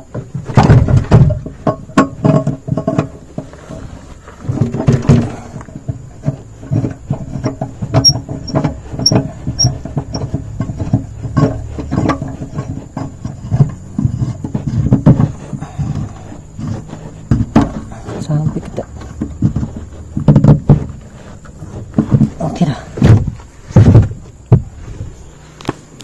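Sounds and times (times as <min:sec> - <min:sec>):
short high squeaks: 0:08.0 - 0:09.8.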